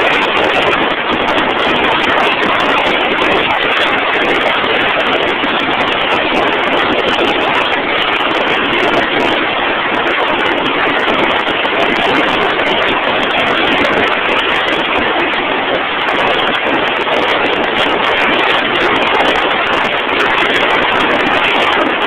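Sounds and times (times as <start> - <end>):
drilling rig machinery din: 0.0 - 22.0.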